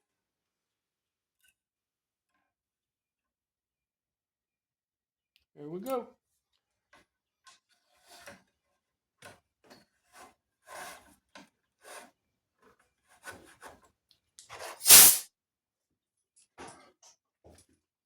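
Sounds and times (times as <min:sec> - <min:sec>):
rushing burst: 0:14.8 - 0:15.2.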